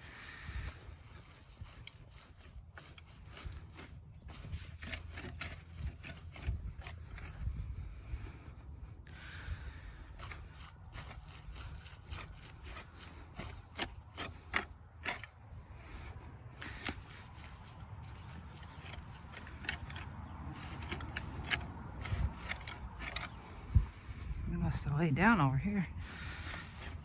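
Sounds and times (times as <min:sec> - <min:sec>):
footsteps through grass: 0:00.6 - 0:07.7, 0:09.8 - 0:23.6, 0:26.4 - 0:27.0.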